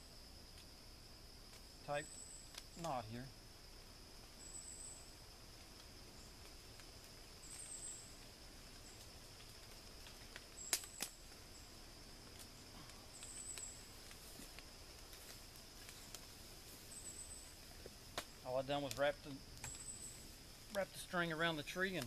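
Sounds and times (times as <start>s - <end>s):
high insect chirps: 0.0s - 22.0s
insects droning: 0.0s - 22.0s.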